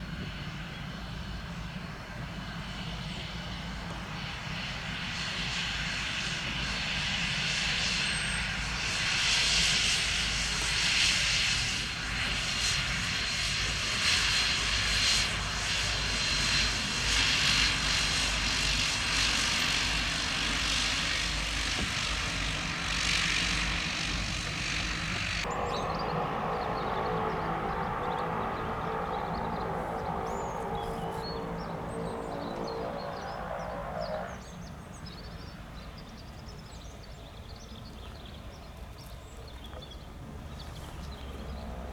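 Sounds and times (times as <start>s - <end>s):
turboprop aircraft taking off: 0.0s - 38.7s
steady held tones: 25.2s - 34.4s.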